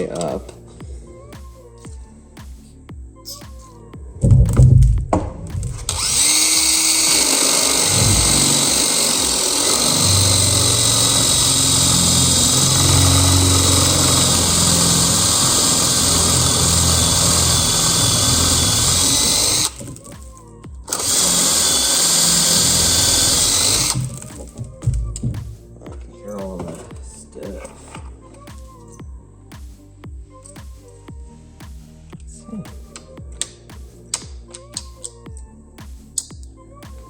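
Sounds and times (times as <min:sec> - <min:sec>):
drill boring into metal: 0:05.8 - 0:20.0, 0:20.9 - 0:24.6.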